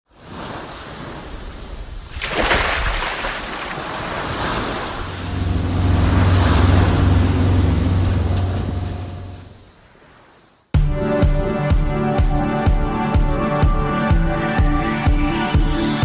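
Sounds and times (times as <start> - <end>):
water washing: 1.6 - 9.5.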